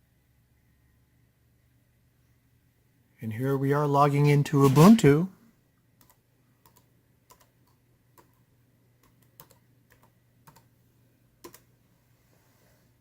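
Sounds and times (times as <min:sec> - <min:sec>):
keyboard keystrokes: 0:09.0 - 0:10.7.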